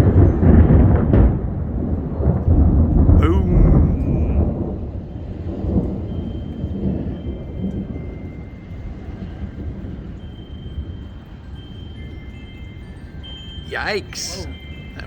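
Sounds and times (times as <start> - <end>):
low rolling thunder: 0.0 - 8.4.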